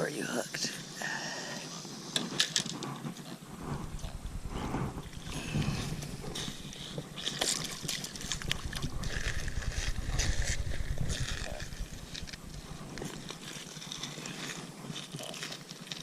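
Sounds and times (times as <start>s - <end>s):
low rumble: 3.5s - 14.3s
water splashing and sloshing: 3.7s - 16.0s.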